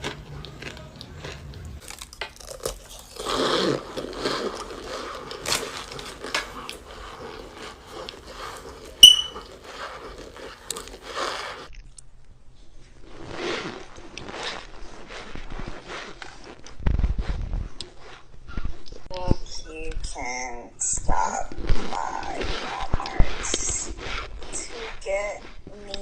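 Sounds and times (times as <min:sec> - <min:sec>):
crunching and chewing: 0:00.0 - 0:12.2, 0:13.0 - 0:19.1.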